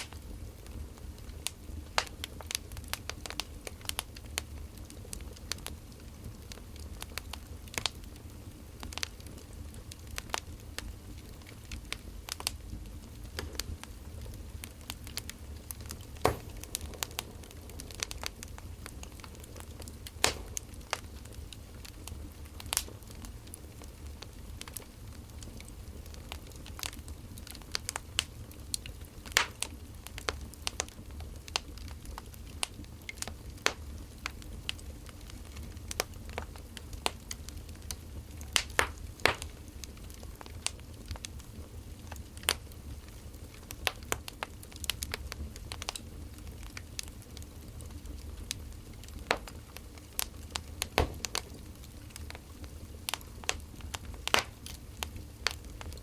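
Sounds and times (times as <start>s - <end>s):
firewood crackling and popping: 0.0s - 56.0s
low steady rumble: 9.6s - 26.3s.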